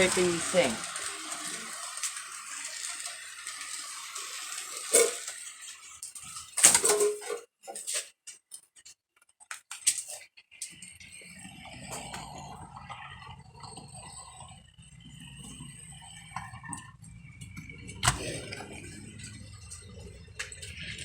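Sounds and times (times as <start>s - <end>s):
model train scraping hiss: 0.0s - 6.6s.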